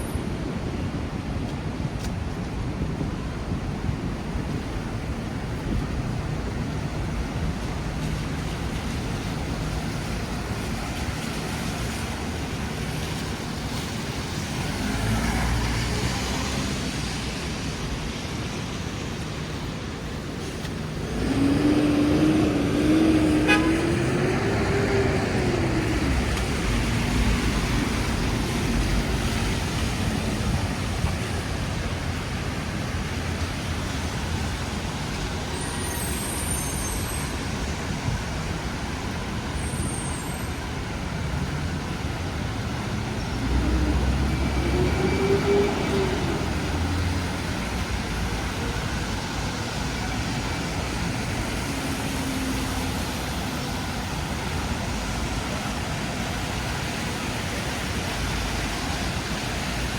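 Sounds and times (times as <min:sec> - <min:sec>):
rain and tyres on wet pavement: 0:00.0 - 0:59.9
vehicles passing: 0:00.0 - 0:59.9
heavy vehicle passing: 0:20.8 - 0:34.5, 0:41.6 - 0:56.0.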